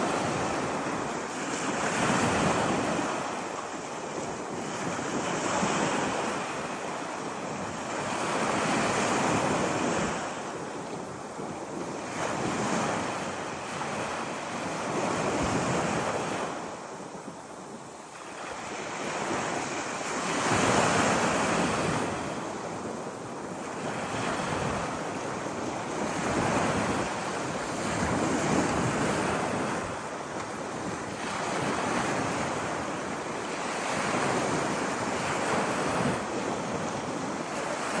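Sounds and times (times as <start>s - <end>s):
ocean surf breaking on beach: 0.0s - 38.0s.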